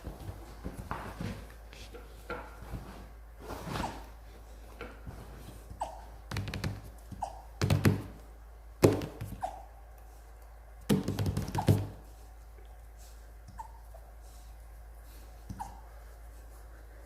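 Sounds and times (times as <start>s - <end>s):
thumps and knocks: 6.3s - 8.2s, 8.8s - 9.4s, 10.9s - 12.0s
puppy hiccupping: 7.1s - 7.6s, 9.4s - 9.7s, 13.5s - 13.8s, 15.5s - 15.9s.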